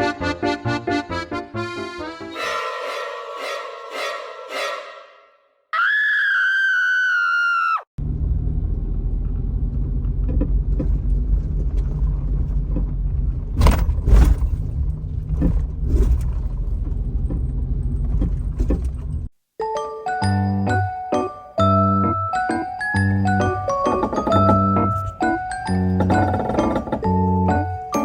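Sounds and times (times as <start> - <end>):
van engine rumbling: 8.0 - 19.3, 21.7 - 28.0
sharp knocks and rattles: 10.1 - 19.3, 23.4 - 27.6.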